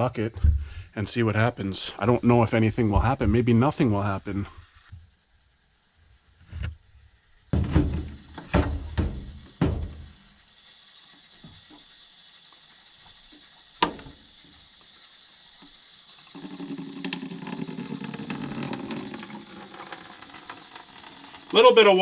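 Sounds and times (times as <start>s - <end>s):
water trickling into bucket: 11.1s - 22.0s.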